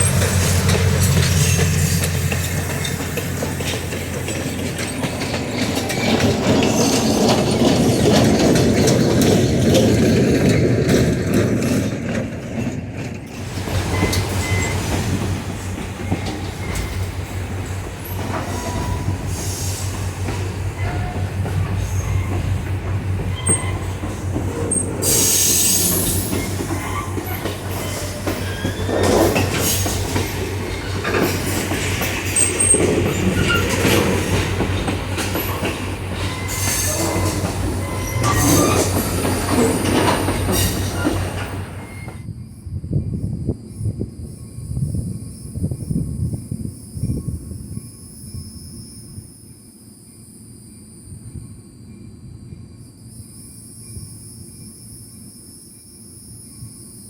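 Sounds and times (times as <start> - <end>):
wheels clicking over rail joints: 0.0 - 42.2
train rumbling on rails: 0.0 - 57.0
train wheels squealing: 0.0 - 57.0.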